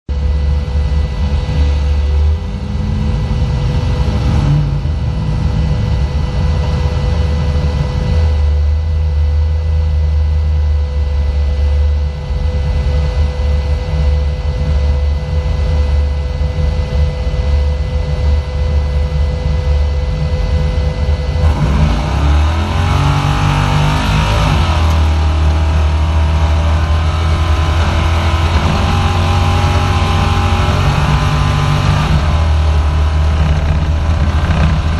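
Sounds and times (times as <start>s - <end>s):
race car engine revving: 0.1s - 8.6s, 20.2s - 34.9s.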